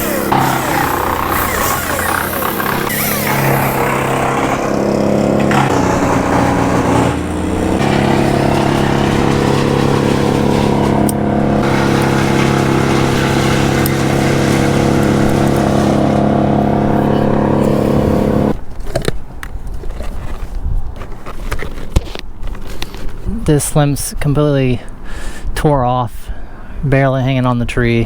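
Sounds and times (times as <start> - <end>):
chainsaw cutting at high speed: 0.0 - 18.6.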